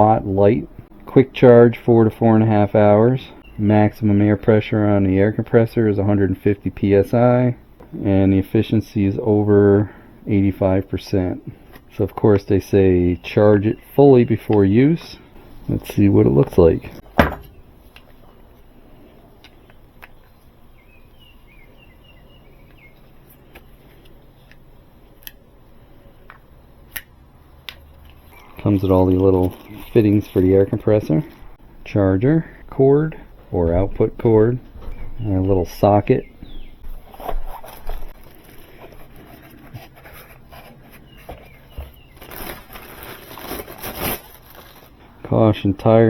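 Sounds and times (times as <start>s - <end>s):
items being handled: 15.0s - 20.6s, 27.7s - 31.6s, 36.8s - 45.1s.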